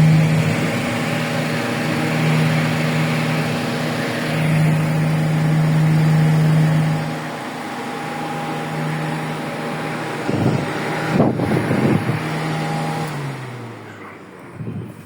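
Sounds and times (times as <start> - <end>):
table fan running: 0.0 - 15.0.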